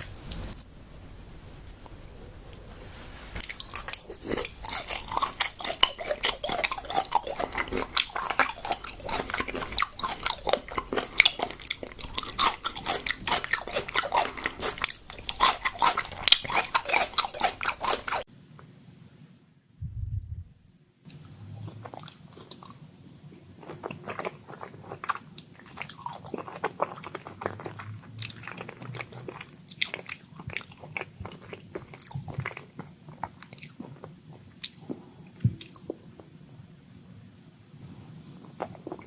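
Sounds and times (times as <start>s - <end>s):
close chewing mouth clicks: 3.4s - 18.2s.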